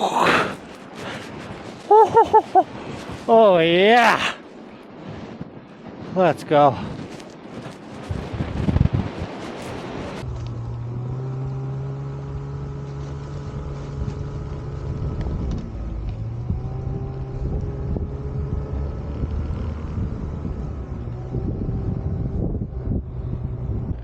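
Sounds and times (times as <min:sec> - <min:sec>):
snowmobile engine running: 0:10.3 - 0:24.0.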